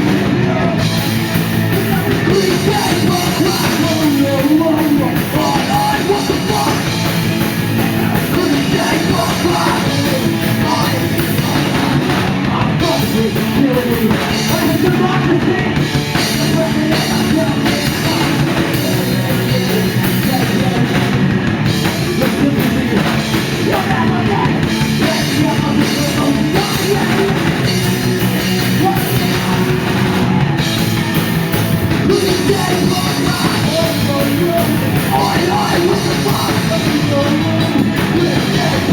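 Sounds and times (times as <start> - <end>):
drum kit: 0.0 - 38.9
punk rock band playing live: 0.0 - 38.9.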